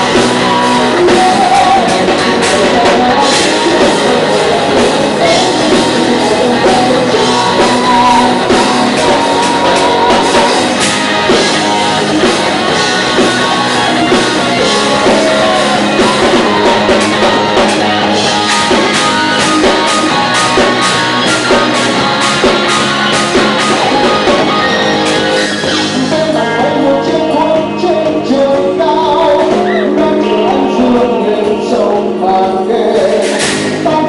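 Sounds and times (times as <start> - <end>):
drum strikes: 0.0 - 26.3
live rock band playing: 0.0 - 34.0
person singing: 0.0 - 34.0.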